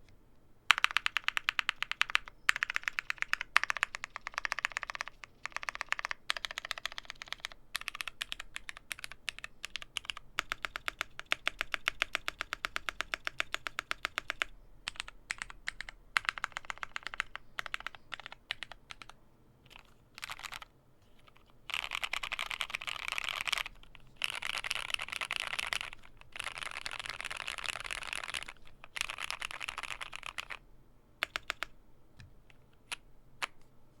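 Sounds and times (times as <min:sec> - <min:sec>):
mechanical keyboard typing: 0:00.7 - 0:20.7, 0:21.7 - 0:30.6, 0:31.2 - 0:31.8.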